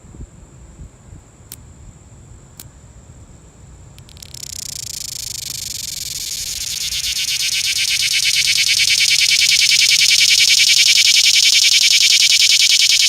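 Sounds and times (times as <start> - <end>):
cicada clicks: 1.4 - 1.7, 2.5 - 2.8, 3.9 - 13.0
cicada buzzing: 3.9 - 13.0.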